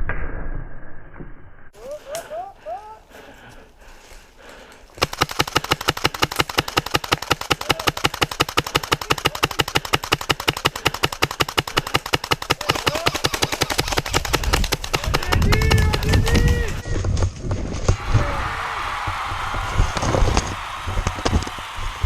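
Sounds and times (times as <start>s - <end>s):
airsoft rifle full-auto fire: 5.0s - 16.2s.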